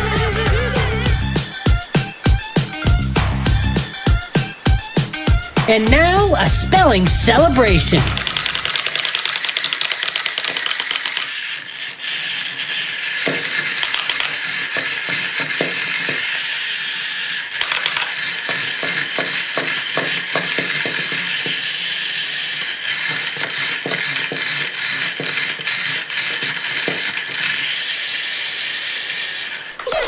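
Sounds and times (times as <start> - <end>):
rapid irregular clicking and rattling: 8.6 - 16.4.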